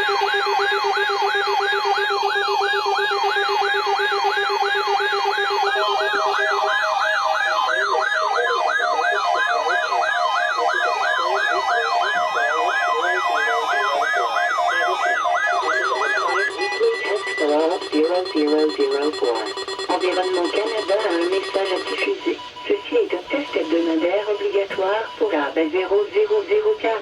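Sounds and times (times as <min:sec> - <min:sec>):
emergency alert siren tone: 0:00.0 - 0:27.0
steady held tones: 0:11.8 - 0:22.4
person announcing: 0:15.5 - 0:27.0.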